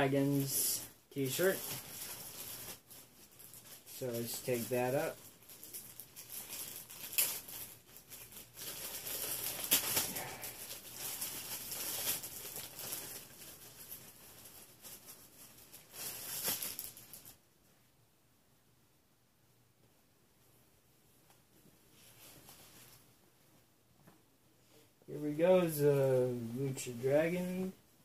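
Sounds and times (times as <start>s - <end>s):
packaging crinkling: 1.2s - 17.4s.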